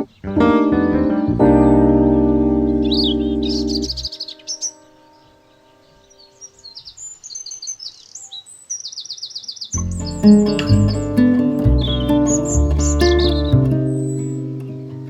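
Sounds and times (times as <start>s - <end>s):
background music: 0.0s - 6.0s, 9.8s - 14.4s
songbirds chirping: 0.0s - 15.0s
bird trill: 2.8s - 14.6s.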